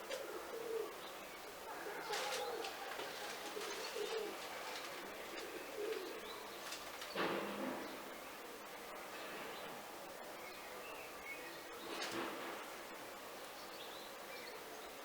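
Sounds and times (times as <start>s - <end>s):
birds calling with low notes: 0.0s - 8.5s.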